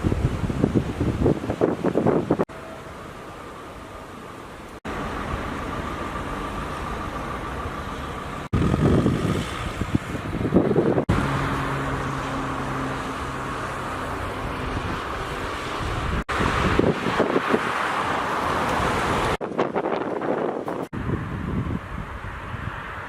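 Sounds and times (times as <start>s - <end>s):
wind buffeting the microphone: 0.0s - 2.5s, 8.5s - 11.2s, 14.2s - 17.9s, 18.6s - 23.0s
traffic noise: 0.0s - 23.0s
vehicle engine idling: 2.5s - 10.8s.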